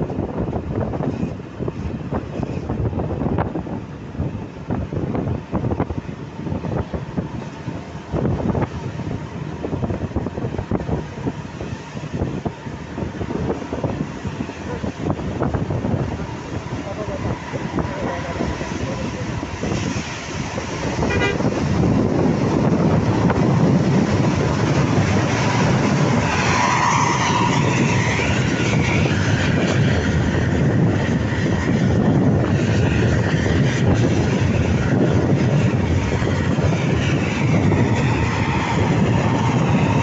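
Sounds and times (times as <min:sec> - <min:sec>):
road traffic rumble: 0:00.0 - 0:40.0
wind: 0:00.0 - 0:40.0
car horn toots: 0:21.0 - 0:21.6.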